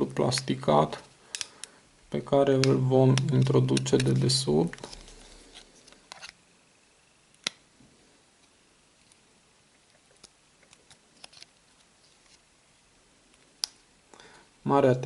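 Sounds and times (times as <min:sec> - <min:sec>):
small plastic parts clicking: 0:01.3 - 0:01.7.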